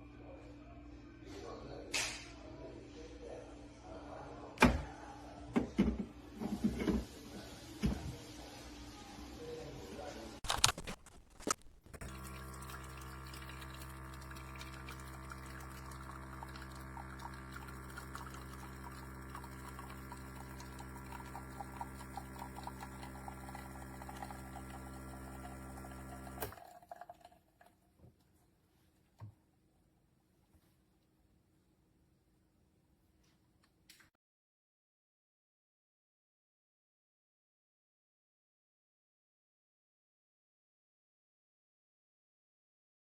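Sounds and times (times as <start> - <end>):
espresso machine pump buzzing: 10.5 - 27.2
liquid pouring and dripping: 10.5 - 28.0.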